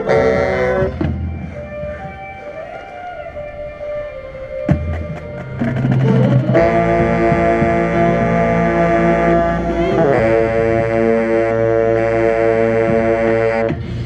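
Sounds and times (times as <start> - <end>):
tenor saxophone: 0.0 - 13.8
marching band playing held chords: 0.0 - 14.0.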